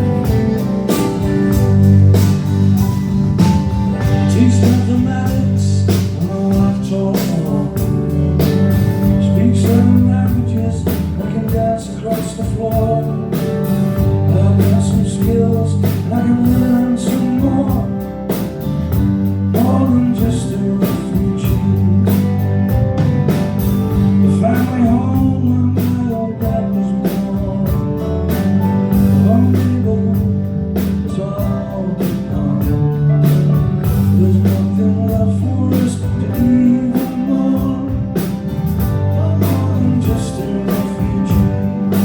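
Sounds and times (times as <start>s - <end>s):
lead vocal singing: 0.0s - 2.1s, 3.9s - 13.5s, 14.1s - 18.3s, 19.5s - 22.3s, 24.1s - 28.1s, 33.9s - 42.0s
live band playing: 0.0s - 42.0s.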